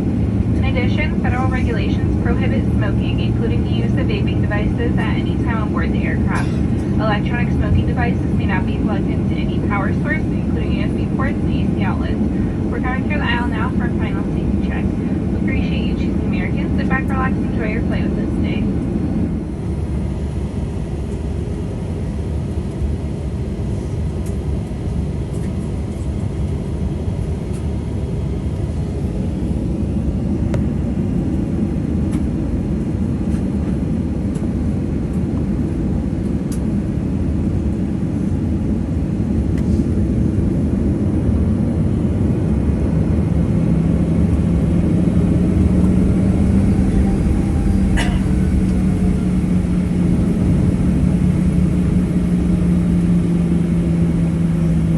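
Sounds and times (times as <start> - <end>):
aircraft cabin rumble: 0.0 - 54.9
steady low hum: 0.0 - 54.9.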